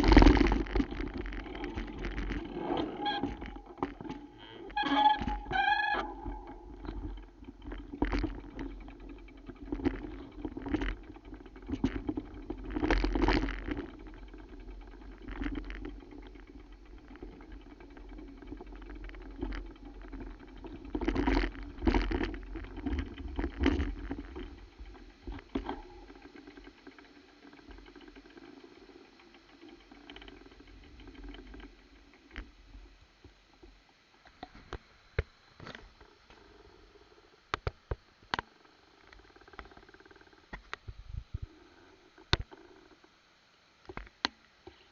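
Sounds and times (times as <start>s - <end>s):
bicycle knocks and rattles: 0.0s - 28.5s
steady low rumble: 40.8s - 41.5s.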